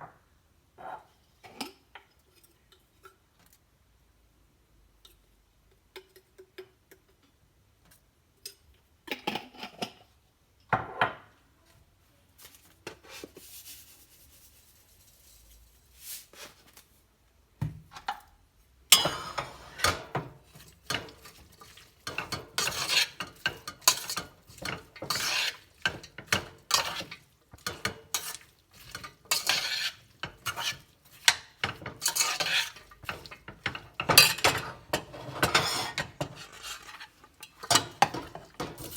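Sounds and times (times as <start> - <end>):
utensil scraping cookware: 18.9 - 38.9.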